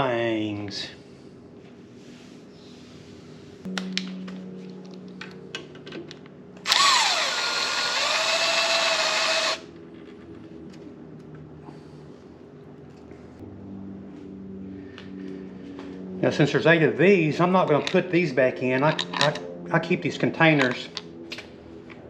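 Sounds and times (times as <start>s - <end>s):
cordless power drill running: 6.6s - 9.7s.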